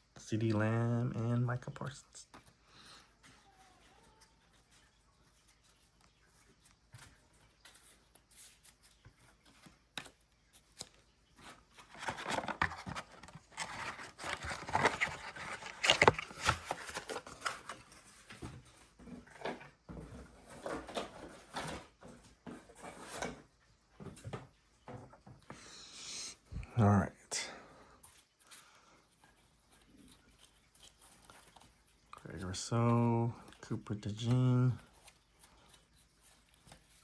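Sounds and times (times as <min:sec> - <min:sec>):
cards clicking and rustling: 0:04.5 - 0:19.6, 0:28.0 - 0:37.0
card pack wrapper crinkling and tearing: 0:11.8 - 0:17.8.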